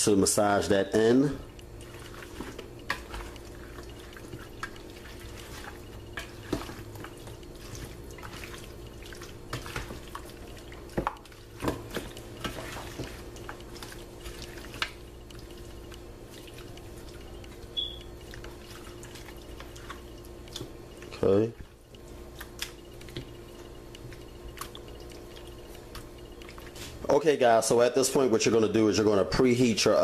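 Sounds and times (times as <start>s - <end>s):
steady low hum: 0.0s - 29.9s
wet squishes of hands massaging chicken: 0.4s - 27.8s
high beep: 17.8s - 18.1s.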